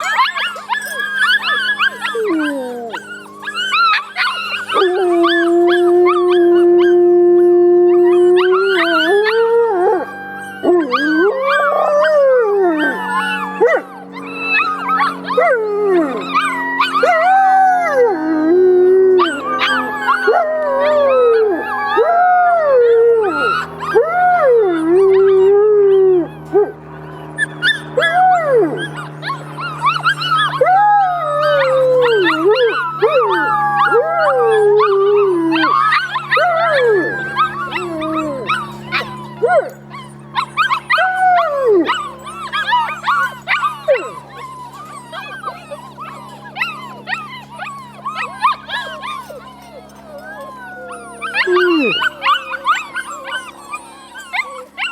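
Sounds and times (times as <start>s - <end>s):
dog long low howl: 0.0s - 54.9s
puppies howling: 0.0s - 54.9s.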